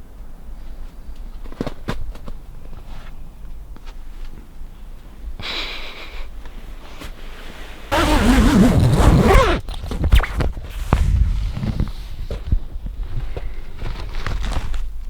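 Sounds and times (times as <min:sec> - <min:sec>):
zipper being pulled: 0:07.9 - 0:12.4.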